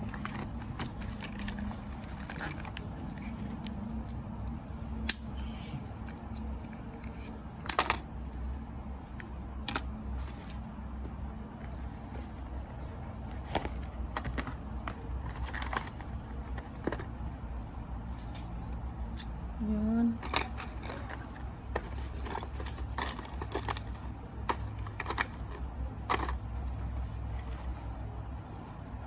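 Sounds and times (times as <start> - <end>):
plastic wrapping rustling: 0.0 - 3.6, 11.5 - 17.1, 20.2 - 28.0
steady low hum: 0.0 - 29.0.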